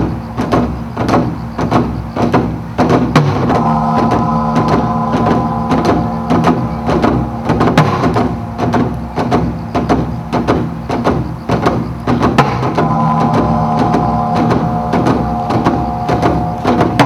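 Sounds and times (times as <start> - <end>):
sharp percussive hits: 3.3 - 17.0
sustained held tones: 3.4 - 17.0.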